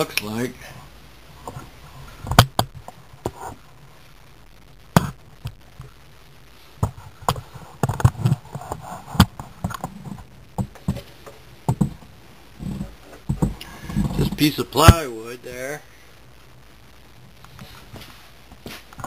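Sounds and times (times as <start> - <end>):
knocks and thumps on wood: 11.7 - 12.0, 12.6 - 14.3.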